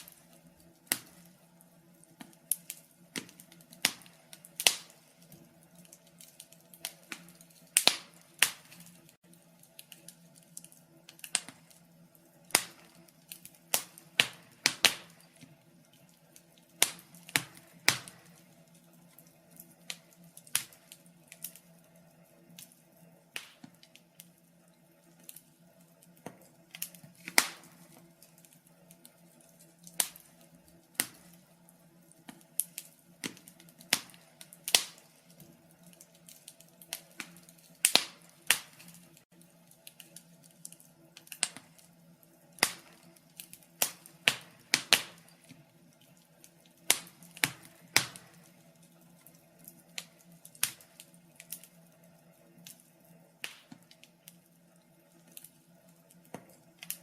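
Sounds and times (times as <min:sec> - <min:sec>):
sharp pops and snaps: 0:00.0 - 0:01.4, 0:02.0 - 0:11.9, 0:12.5 - 0:18.5, 0:19.1 - 0:21.7, 0:22.5 - 0:24.3, 0:26.0 - 0:31.5, 0:32.1 - 0:42.0, 0:42.6 - 0:48.6, 0:49.2 - 0:51.8, 0:53.4 - 0:54.4
faint steady hum: 0:00.0 - 0:57.0
wood fire crackling: 0:00.0 - 0:57.0.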